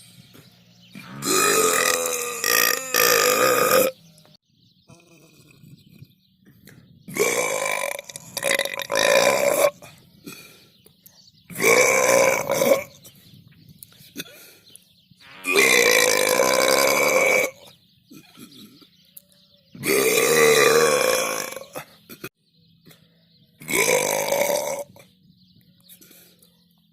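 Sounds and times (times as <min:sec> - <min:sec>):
person burping: 0:01.0 - 0:04.0, 0:04.9 - 0:06.1, 0:07.1 - 0:10.4, 0:11.5 - 0:13.0, 0:15.4 - 0:18.8, 0:19.8 - 0:22.3, 0:23.6 - 0:25.0.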